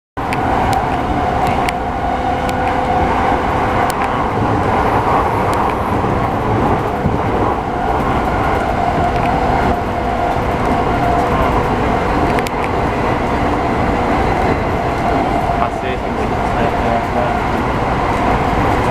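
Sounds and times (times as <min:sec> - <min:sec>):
electric train rumble: 0:00.2 - 0:18.9
train motor whine: 0:04.4 - 0:16.4.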